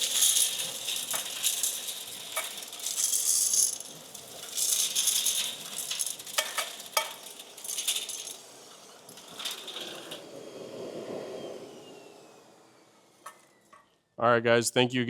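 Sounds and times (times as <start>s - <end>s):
metal chips rattling through vacuum hose: 0.0s - 10.2s.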